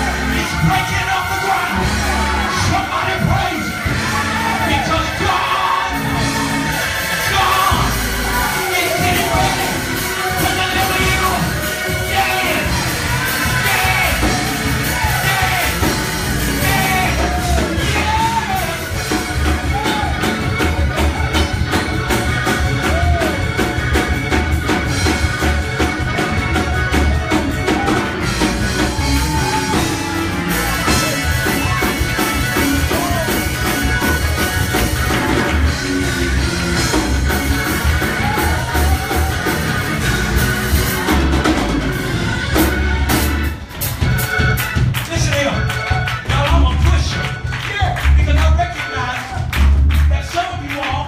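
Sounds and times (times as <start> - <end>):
voices singing: 0.0 - 23.6
drum kit fast beat: 0.0 - 51.0
other instruments playing: 0.0 - 51.0.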